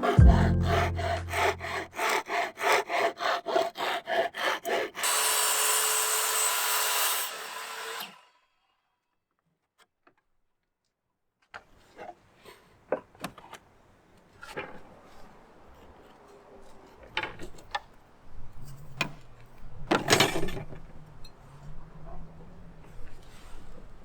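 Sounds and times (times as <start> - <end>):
scraping noise: 0.0 - 2.0.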